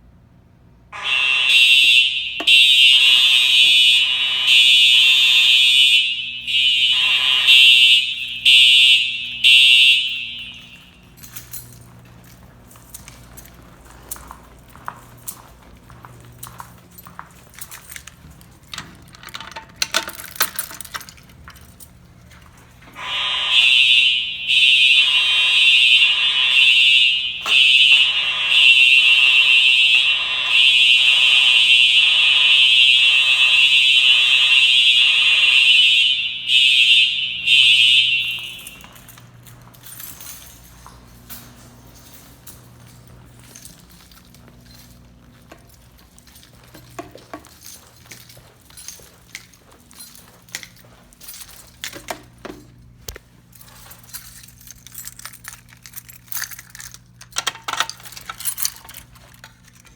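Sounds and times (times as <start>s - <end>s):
fire alarm horn: 0.9s - 18.9s, 20.1s - 52.9s
faint clicks and handling noise: 7.9s - 23.7s, 24.5s - 59.9s.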